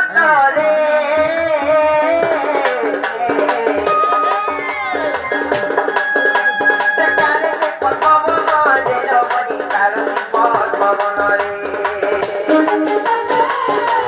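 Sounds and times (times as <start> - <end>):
hand drum rhythm: 1.2 - 14.0
held melody line: 1.5 - 9.2, 11.2 - 14.0.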